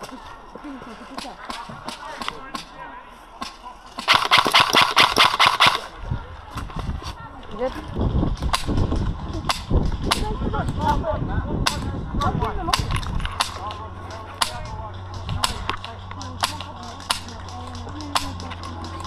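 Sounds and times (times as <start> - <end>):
airsoft gunfire cracks: 3.4 - 5.9, 15.3 - 18.8.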